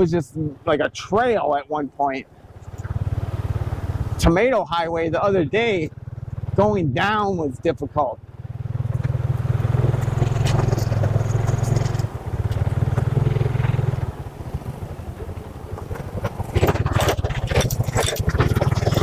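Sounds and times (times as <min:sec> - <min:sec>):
motorcycle engine running: 0:00.0 - 0:19.0
sharp knocks and rattles: 0:08.5 - 0:19.0.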